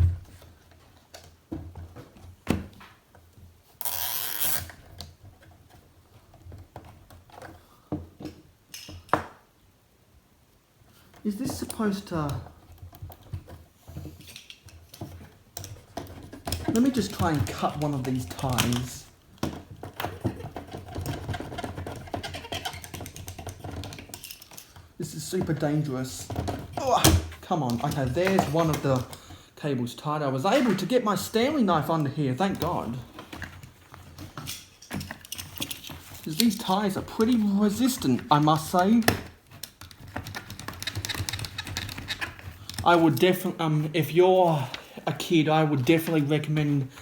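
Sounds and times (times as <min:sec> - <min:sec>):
knife scraping plastic zip tie: 0:03.8 - 0:04.8.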